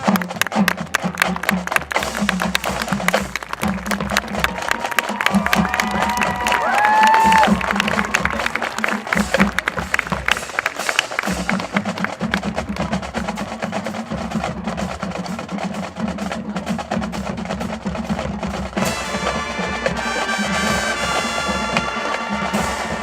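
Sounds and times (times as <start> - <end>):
rapid drum strokes: 0.0 - 23.0
horns playing chords: 18.7 - 23.0.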